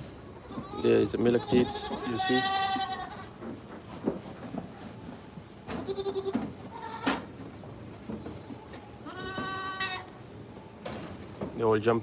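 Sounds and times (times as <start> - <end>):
goat kid bleating: 0.2 - 3.4, 5.8 - 7.3, 8.2 - 10.2.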